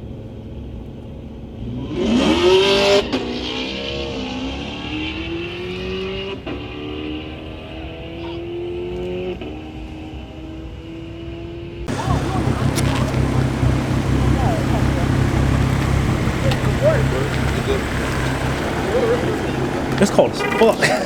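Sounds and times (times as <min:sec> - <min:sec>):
car engines accelerating: 0:11.9 - 0:21.0.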